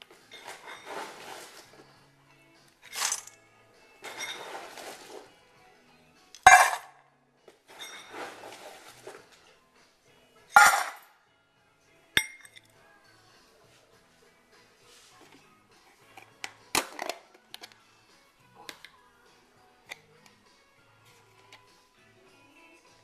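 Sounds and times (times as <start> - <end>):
dishes clinking: 0.3 - 1.3, 4.0 - 4.8, 6.5 - 6.9, 7.7 - 8.5, 10.6 - 11.0, 12.2 - 12.6
dishes rattling and scraping: 0.3 - 1.7, 2.9 - 3.3, 4.0 - 5.2, 6.5 - 6.9, 7.7 - 9.2, 10.6 - 11.0.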